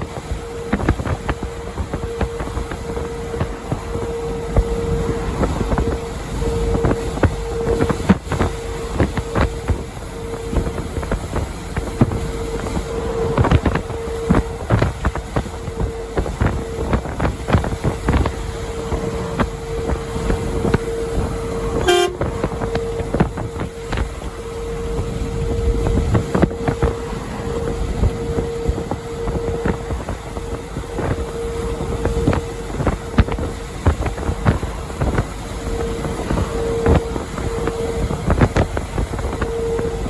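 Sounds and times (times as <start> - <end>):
road rumble: 0.0 - 40.0
wind buffeting: 0.0 - 40.0
truck air horn: 21.4 - 23.1.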